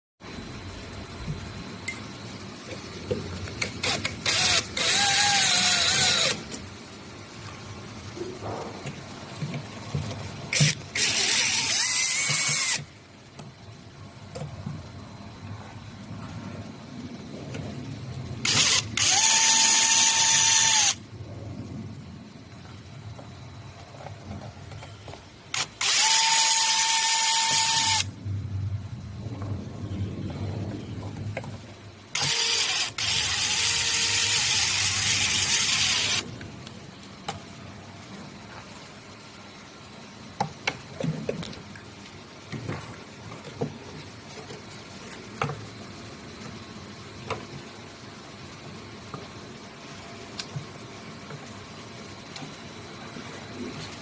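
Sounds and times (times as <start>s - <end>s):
power drill running: 3.6s - 6.5s, 10.5s - 12.9s, 18.4s - 21.0s, 25.5s - 28.1s, 32.1s - 36.2s
small electric motor whine: 3.6s - 6.6s, 10.5s - 12.9s, 18.4s - 21.0s, 25.5s - 28.1s, 32.1s - 36.2s.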